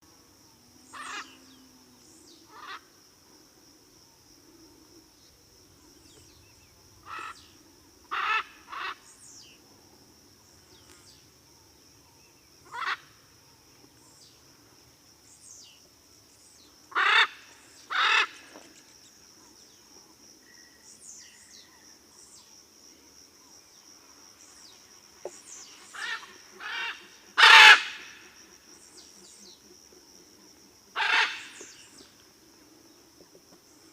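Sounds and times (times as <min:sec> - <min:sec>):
macaws calling: 0:00.9 - 0:01.5, 0:02.4 - 0:03.0, 0:07.0 - 0:09.6, 0:12.1 - 0:13.3, 0:16.9 - 0:18.8, 0:25.5 - 0:29.8, 0:30.6 - 0:32.0.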